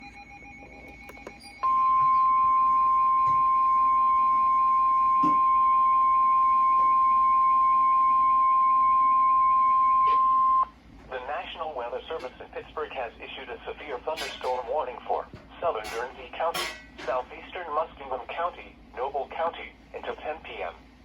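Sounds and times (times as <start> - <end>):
steady alarm tone: 0.0 - 10.7.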